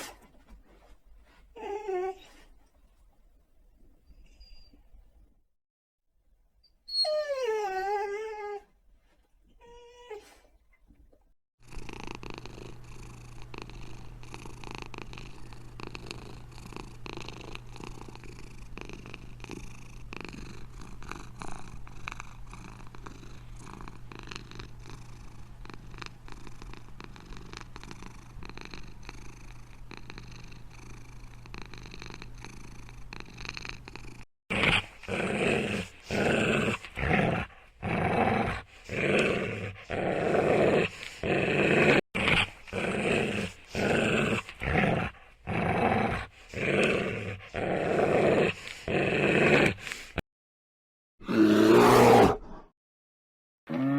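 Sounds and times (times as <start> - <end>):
dog growling: 0.0 - 2.8, 6.9 - 8.7, 9.6 - 50.2, 51.2 - 52.7
cat purring: 11.7 - 34.2.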